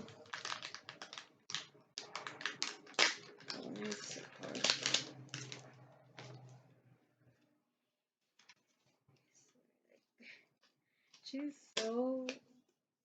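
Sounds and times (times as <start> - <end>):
wrapping paper tearing and crumpling: 0.0 - 6.5.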